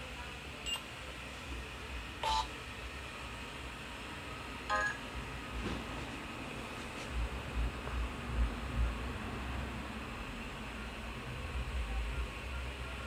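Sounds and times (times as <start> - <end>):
mobile phone electronic beeps: 2.2 - 2.5.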